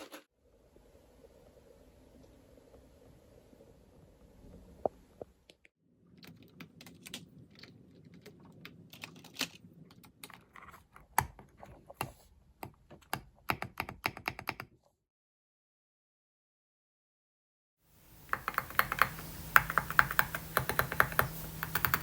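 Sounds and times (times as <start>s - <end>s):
mechanical keyboard clacks: 12.6s - 14.7s, 18.3s - 22.0s.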